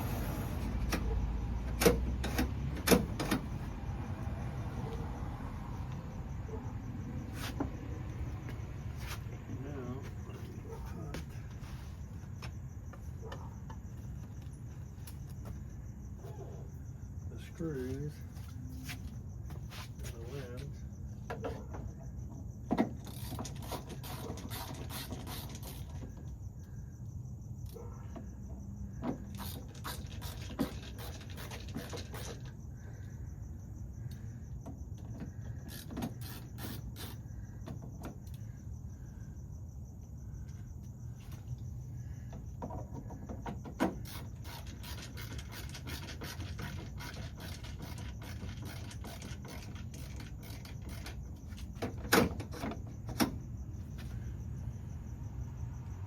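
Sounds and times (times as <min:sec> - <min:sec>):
tools clicking and scraping: 0:29.2 - 0:32.5, 0:43.8 - 0:52.8.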